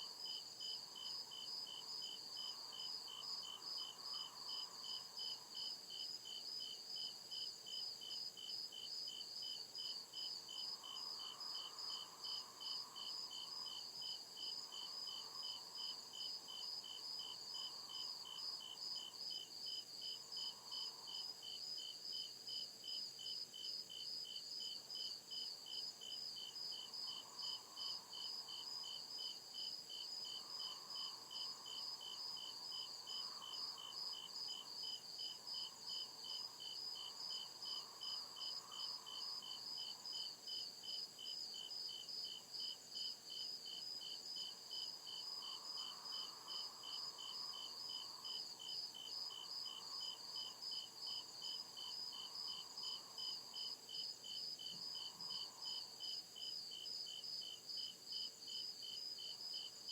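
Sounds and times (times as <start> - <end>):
crickets chirping: 0.0 - 59.9.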